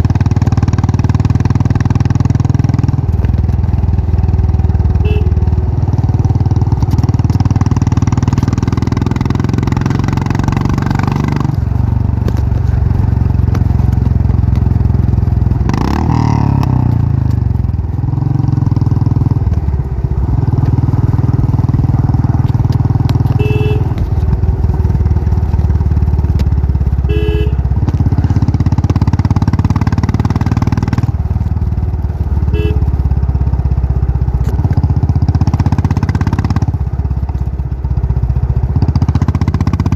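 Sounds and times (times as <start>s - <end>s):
motorcycle engine running: 0.0s - 39.9s
horn beeps: 5.0s - 5.5s, 23.3s - 24.0s, 27.0s - 27.7s, 32.5s - 32.9s.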